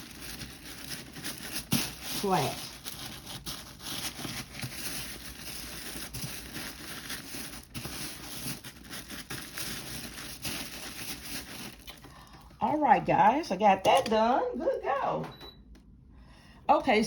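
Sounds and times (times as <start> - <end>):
tissue paper rustling and crinkling: 0.0 - 12.4.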